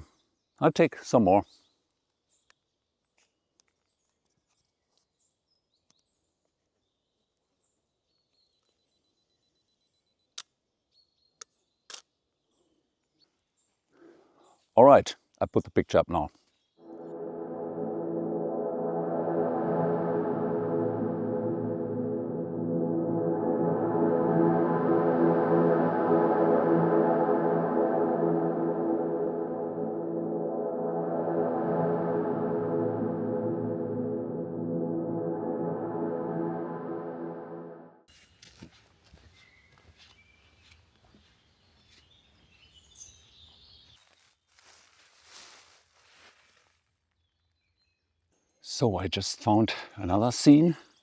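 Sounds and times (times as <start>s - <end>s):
faint bird chirps: 5.3s - 14.7s, 39.3s - 44.4s
ambient background music: 16.8s - 38.1s.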